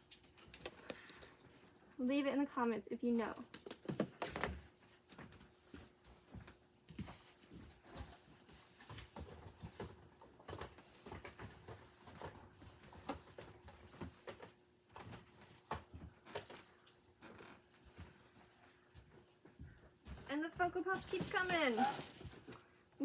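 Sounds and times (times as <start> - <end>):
boxed toys rustling and knocking: 3.4 - 22.7.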